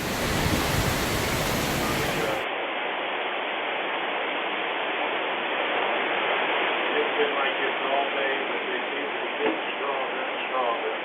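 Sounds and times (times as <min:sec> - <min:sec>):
wind gusting on microphone: 0:00.0 - 0:02.4.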